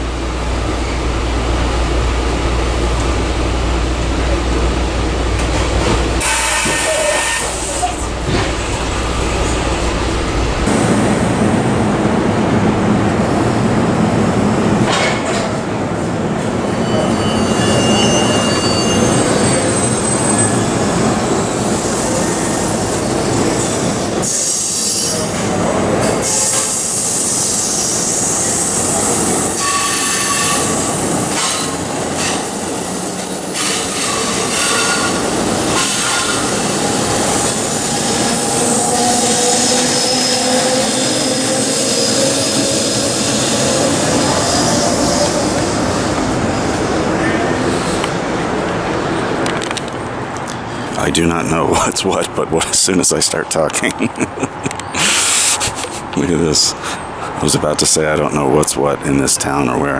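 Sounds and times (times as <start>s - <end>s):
train rumbling past: 0.0s - 59.9s
wheel squeals: 16.7s - 25.2s.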